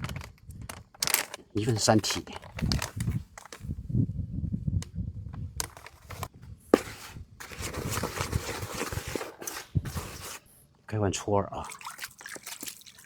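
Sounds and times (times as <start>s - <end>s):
packets knocking and rustling: 0.0s - 3.7s, 5.6s - 10.5s.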